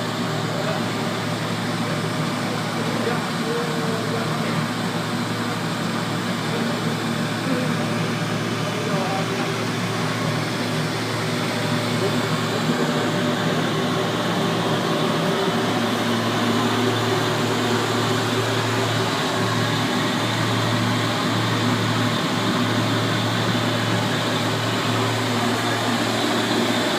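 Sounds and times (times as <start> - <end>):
burner blower and flame rushing: 0.0 - 26.9.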